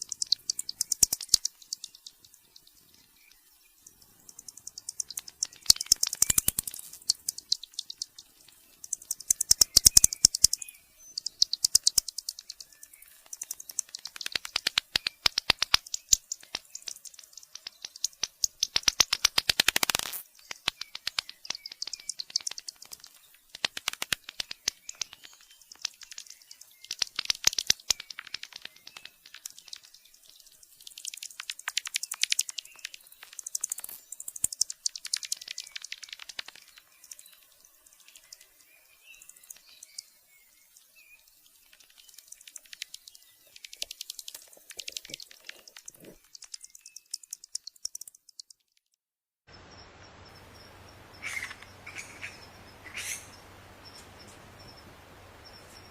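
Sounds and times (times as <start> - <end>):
bats squeaking and chittering: 0.0 - 48.7, 50.3 - 55.9
steady background hiss: 49.5 - 55.9.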